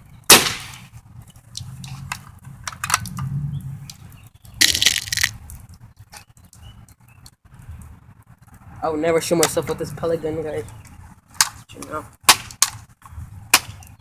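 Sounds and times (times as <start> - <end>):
pellet rifle crack: 0.3 - 1.7, 12.3 - 12.8, 13.5 - 14.0.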